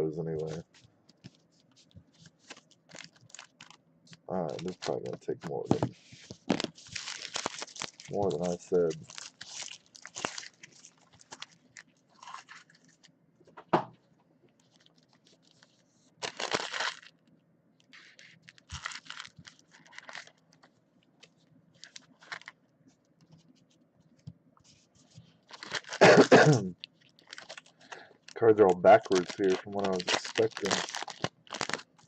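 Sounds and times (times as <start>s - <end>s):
foil wrappers tearing and crinkling: 2.4s - 5.8s, 6.4s - 13.1s, 14.7s - 17.1s, 18.0s - 20.6s, 21.8s - 22.6s, 25.5s - 32.0s.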